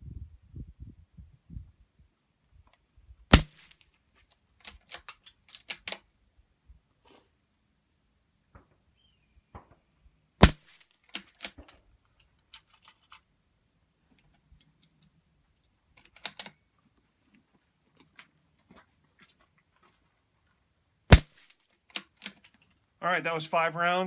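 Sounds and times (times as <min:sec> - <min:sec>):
suppressed rifle shot: 0:03.3 - 0:03.7, 0:10.4 - 0:10.8, 0:21.1 - 0:21.5.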